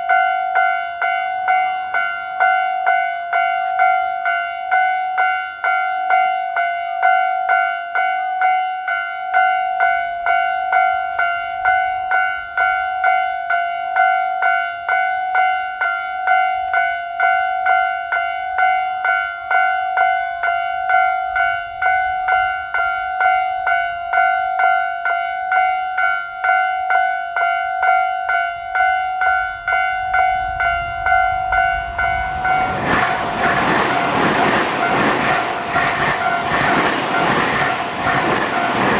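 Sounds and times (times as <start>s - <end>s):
level-crossing alarm dinging: 27.6s - 38.9s
approaching train: 27.9s - 38.9s.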